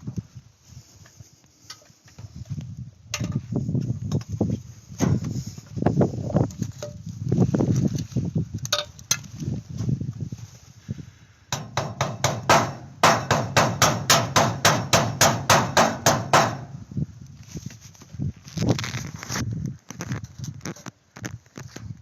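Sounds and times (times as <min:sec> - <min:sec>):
hammer blows: 0:11.5 - 0:16.7.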